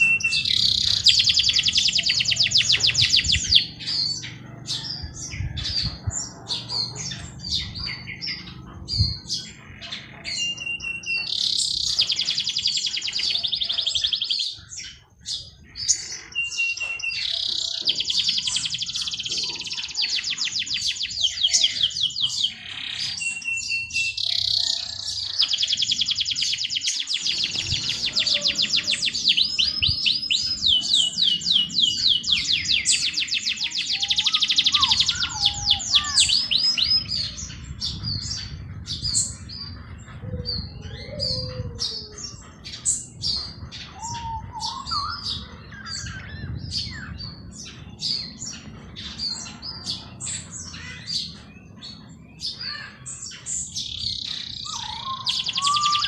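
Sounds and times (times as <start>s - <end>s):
songbirds chirping: 0.0s - 56.0s
low rumble: 2.8s - 10.1s
low whistled bird calls: 15.4s - 47.4s, 54.0s - 56.0s.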